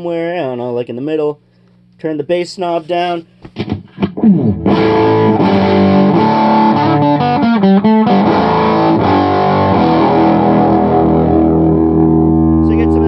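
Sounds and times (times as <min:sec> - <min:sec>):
overdriven electric guitar: 0:03.5 - 0:13.0.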